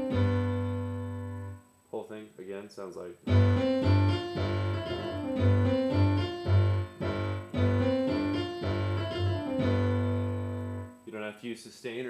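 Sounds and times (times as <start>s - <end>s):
piano playing repeating riff: 0.0s - 1.8s, 3.2s - 11.1s.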